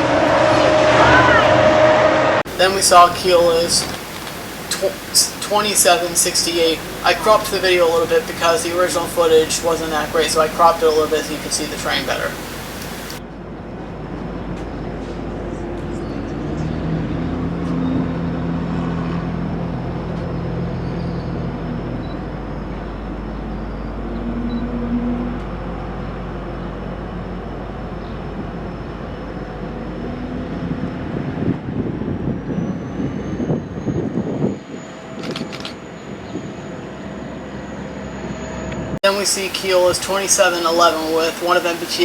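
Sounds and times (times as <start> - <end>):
diesel locomotive engine droning: 0.0 - 13.2, 13.8 - 42.0
train rolling rumble: 0.0 - 13.2.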